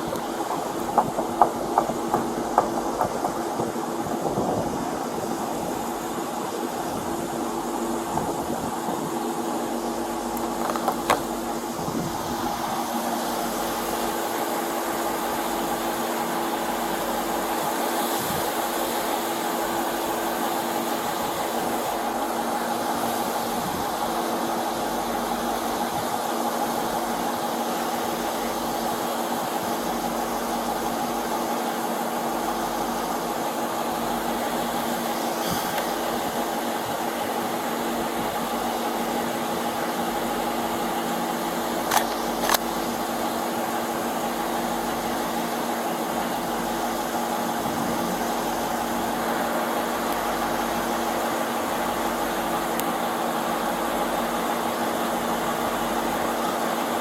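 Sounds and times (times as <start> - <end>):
steady mechanical hum: 0.0 - 57.0
sharp click: 41.9 - 42.7.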